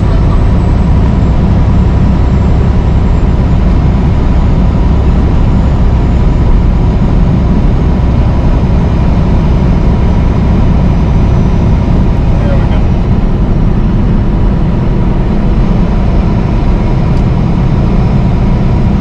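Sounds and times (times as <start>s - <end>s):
truck engine drone: 0.0s - 19.0s.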